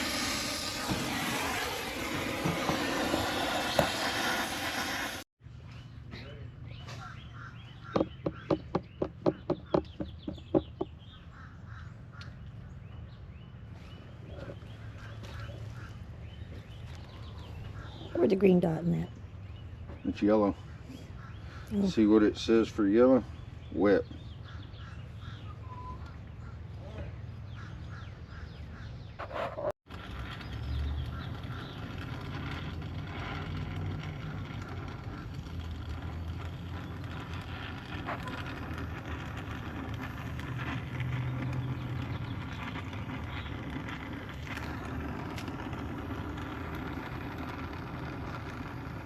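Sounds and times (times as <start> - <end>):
torch flame hissing: 0.0 - 5.3, 29.9 - 49.0.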